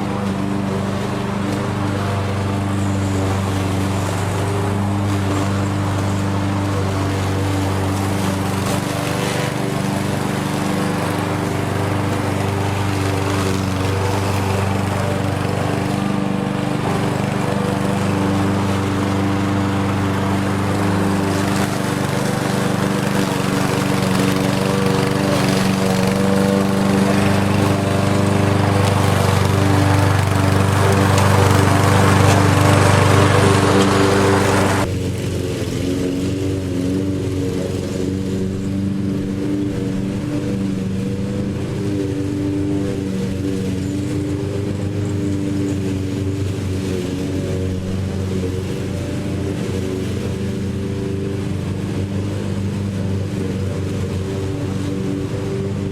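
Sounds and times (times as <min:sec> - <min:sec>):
lawn mower engine running: 0:00.0 - 0:55.9.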